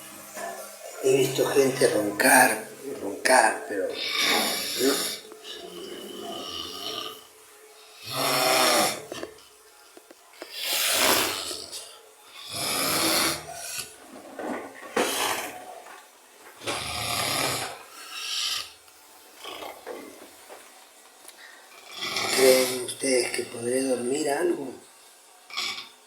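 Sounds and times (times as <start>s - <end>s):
man snoring heavily: 3.9s - 9.4s, 10.5s - 14.0s, 16.6s - 18.8s, 19.4s - 19.8s, 21.8s - 23.1s, 25.5s - 26.0s.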